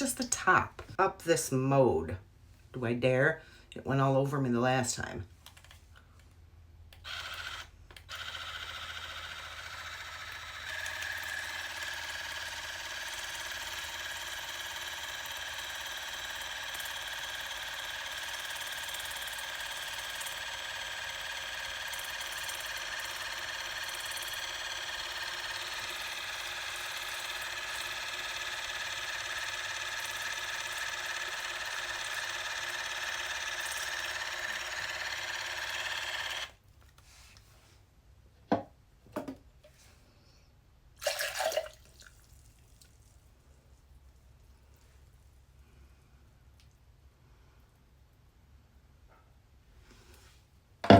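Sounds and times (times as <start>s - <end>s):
water flosser pump buzzing whine: 7.0s - 36.6s.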